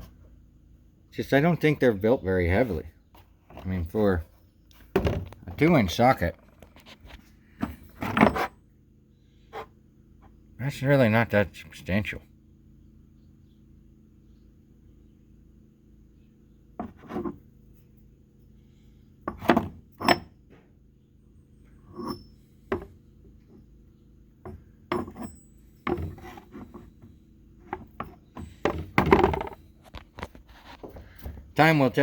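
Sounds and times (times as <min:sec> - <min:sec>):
metal sockets knocking and clinking: 0:19.3 - 0:20.3, 0:24.4 - 0:26.9.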